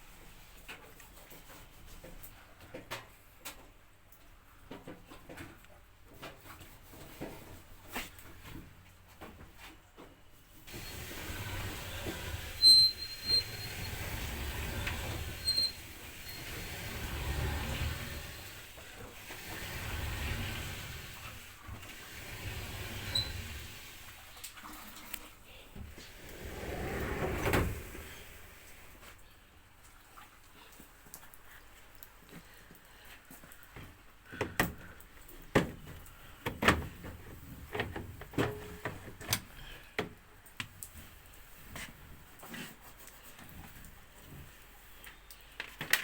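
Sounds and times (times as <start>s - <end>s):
short high squeaks: 10.7s - 18.6s, 22.3s - 23.7s
dryer running with whir: 10.7s - 24.2s
dryer rumble: 10.7s - 24.4s, 25.8s - 29.1s.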